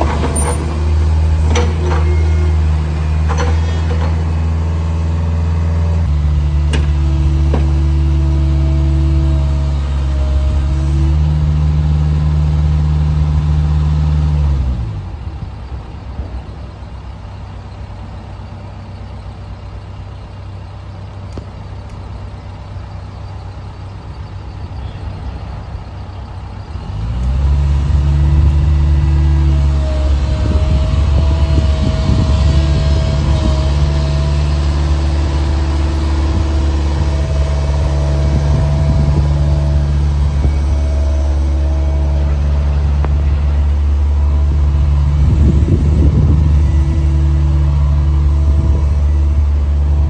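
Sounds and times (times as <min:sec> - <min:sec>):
excavator diesel engine revving: 0:00.0 - 0:50.0
steady whine: 0:21.9 - 0:50.0.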